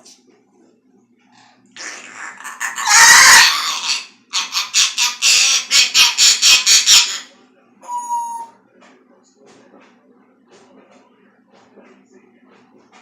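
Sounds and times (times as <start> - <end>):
parrot screeching and squawking: 1.8 - 7.3, 7.9 - 8.5.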